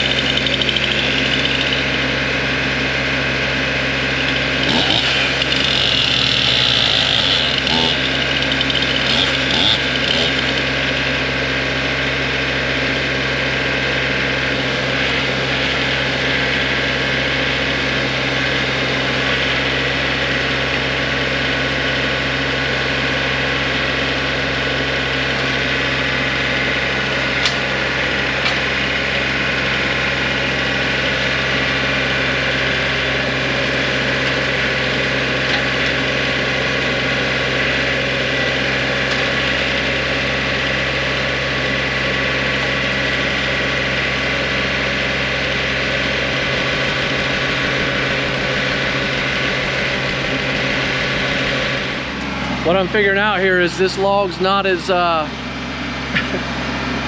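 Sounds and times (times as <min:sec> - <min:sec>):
tractor engine idling: 0:46.3 - 0:52.3.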